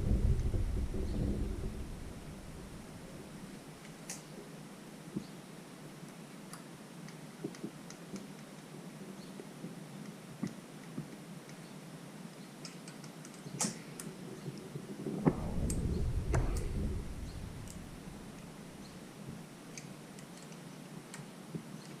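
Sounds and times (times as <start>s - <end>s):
low rumble: 0.0s - 3.6s, 15.2s - 19.0s
sharp knock: 15.3s - 18.2s.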